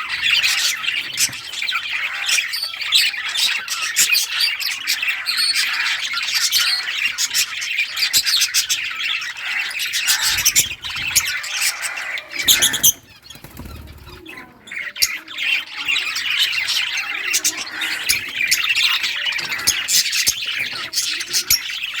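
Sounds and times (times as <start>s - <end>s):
budgerigars chattering and chirping: 0.0s - 22.0s
wings fluttering: 9.5s - 15.2s.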